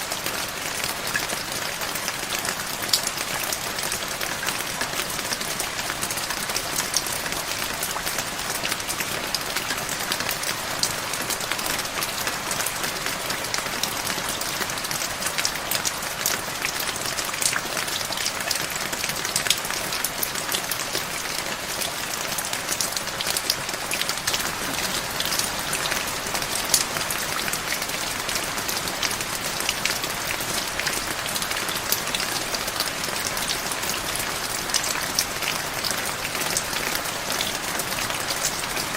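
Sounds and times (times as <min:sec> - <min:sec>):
steady rain hiss: 0:00.0 - 0:38.9
raindrop hits: 0:30.6 - 0:33.2.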